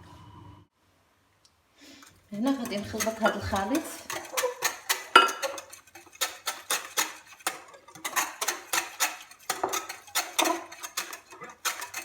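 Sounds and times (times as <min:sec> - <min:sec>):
utensil knocking against bowl: 0:02.5 - 0:12.0.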